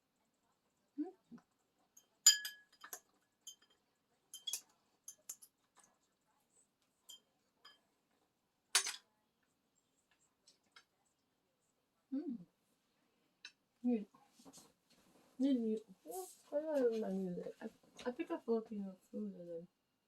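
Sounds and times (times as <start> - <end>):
spoon clinking against dish: 2.0 - 5.6, 7.1 - 7.8
spoon clatter: 2.0 - 5.9, 7.1 - 7.8.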